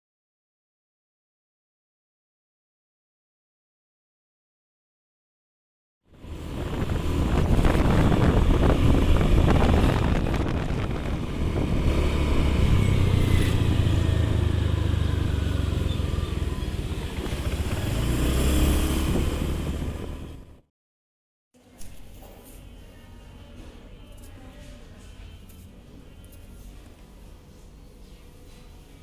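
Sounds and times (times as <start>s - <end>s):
road noise: 6.1s - 20.6s
vehicle engine running: 6.1s - 20.6s.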